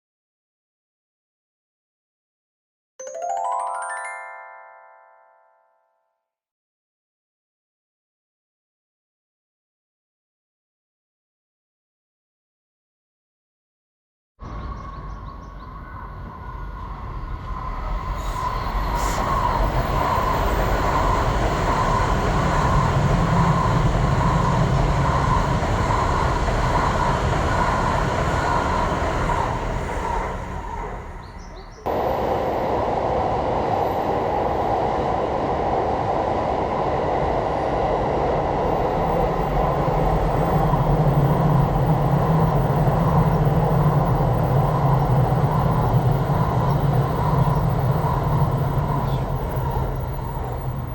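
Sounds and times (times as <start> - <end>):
trains passing on rails: 14.4 - 50.9.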